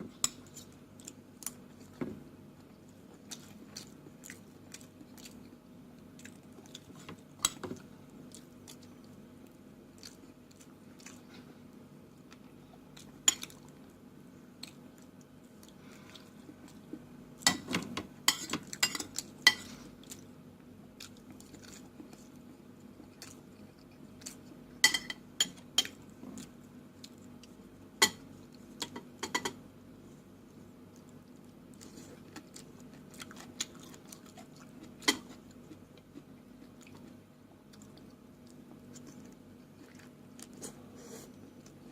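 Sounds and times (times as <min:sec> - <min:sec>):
low steady hum: 0:00.0 - 0:41.9
chewing: 0:02.6 - 0:11.5, 0:14.6 - 0:17.0, 0:21.0 - 0:24.6, 0:30.9 - 0:41.9.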